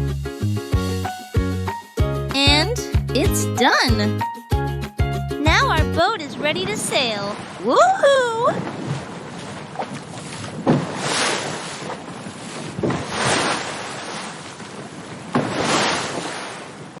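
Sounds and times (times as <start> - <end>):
ocean waves washing in: 6.2 - 17.0.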